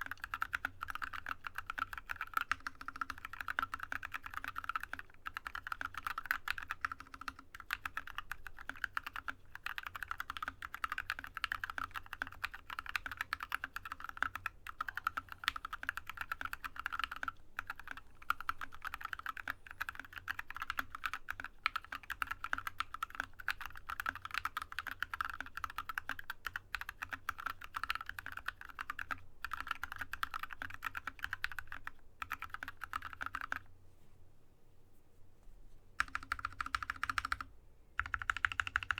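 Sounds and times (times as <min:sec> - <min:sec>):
fast typing on mechanical keyboard: 0:00.0 - 0:33.6, 0:36.0 - 0:38.9.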